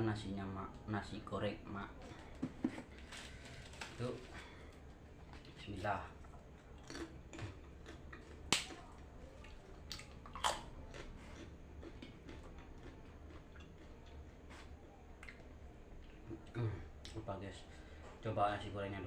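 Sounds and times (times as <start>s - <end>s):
crunchy crackers cracking: 2.9s - 5.6s, 6.5s - 16.3s
chewing clicks: 6.8s - 14.2s.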